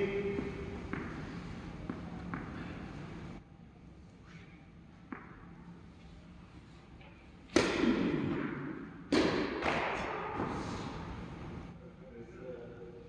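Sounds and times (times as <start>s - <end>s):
racket hitting tennis ball: 0.0s - 3.4s, 7.5s - 11.6s.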